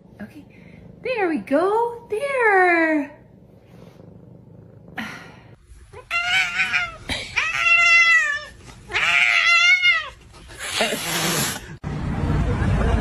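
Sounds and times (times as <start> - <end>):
cat meowing: 6.0 - 10.2.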